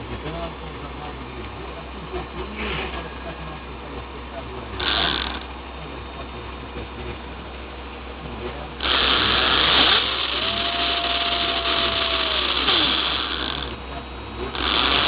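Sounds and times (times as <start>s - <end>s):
harsh rasping motor growl: 4.5s - 6.4s, 8.3s - 15.0s
electric motor whine: 4.7s - 5.5s, 8.8s - 15.0s.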